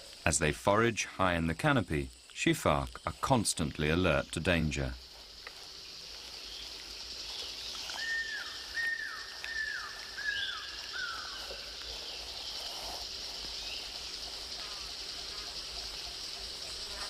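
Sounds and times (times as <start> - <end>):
high insect hiss: 0.0 - 17.0
short whistled calls falling in pitch: 8.0 - 11.2.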